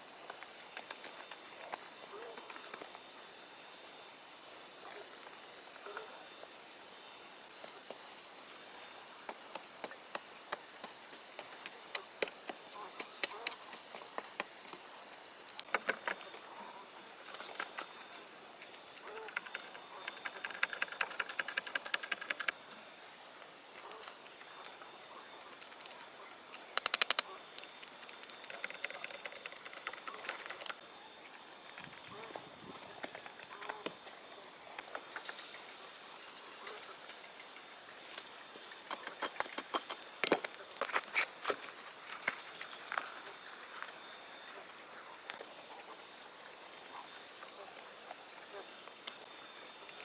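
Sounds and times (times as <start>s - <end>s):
sharp knocks and clicks: 26.8s - 27.3s
fast rattling: 28.0s - 30.8s.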